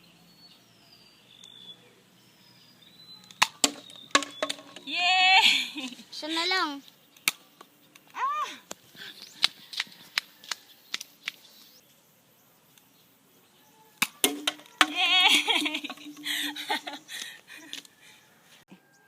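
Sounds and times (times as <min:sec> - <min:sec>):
darts knocking plastic bottles: 0:03.3 - 0:04.8, 0:14.0 - 0:15.0.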